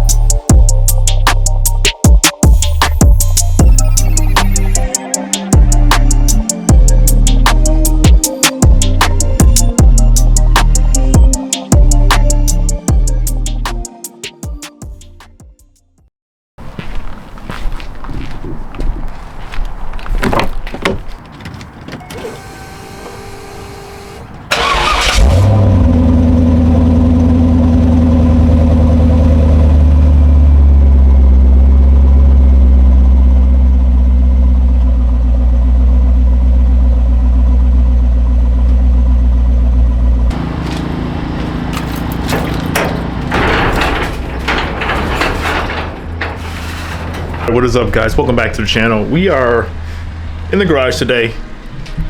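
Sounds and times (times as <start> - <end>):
car engine starting and idling: 22.0 - 52.0
clicks and knocks: 40.3 - 48.6.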